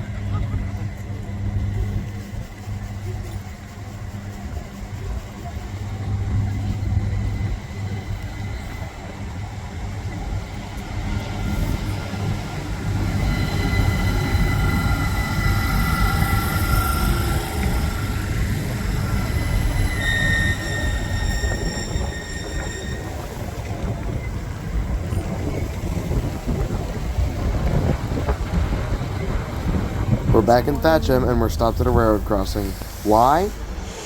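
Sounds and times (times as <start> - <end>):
train rumbling past: 0.0 - 34.0
high whining tones: 12.2 - 23.8.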